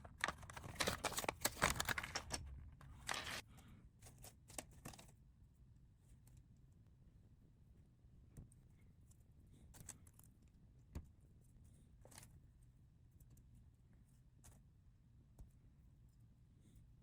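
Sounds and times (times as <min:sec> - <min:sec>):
plastic pieces clicking and rattling: 0:00.1 - 0:02.4, 0:03.0 - 0:03.4.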